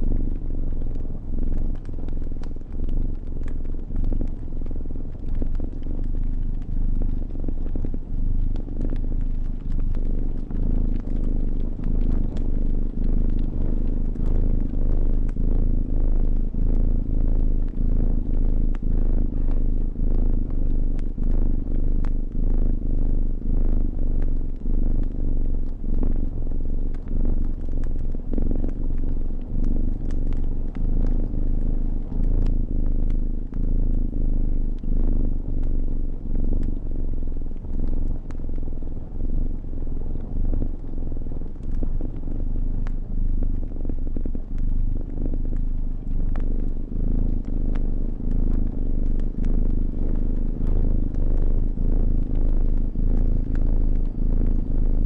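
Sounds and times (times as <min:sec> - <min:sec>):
cat purring: 0:00.0 - 0:55.0
fire crackling: 0:00.1 - 0:55.0.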